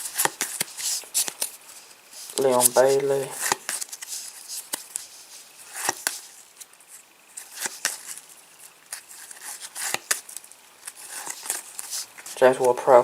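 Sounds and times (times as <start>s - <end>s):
faint card rustling: 0.0s - 13.0s
cards tapping and flicking: 0.1s - 1.6s, 2.3s - 5.1s, 5.7s - 6.3s, 7.4s - 8.2s, 8.9s - 12.8s.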